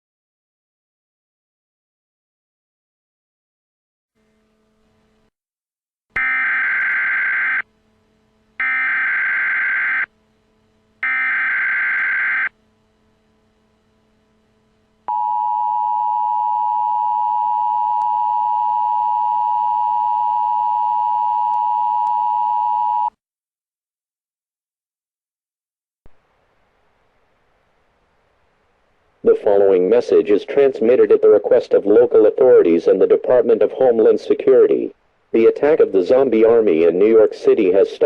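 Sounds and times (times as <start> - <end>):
data tone bursts: 8.6 - 10.1, 11.0 - 12.5.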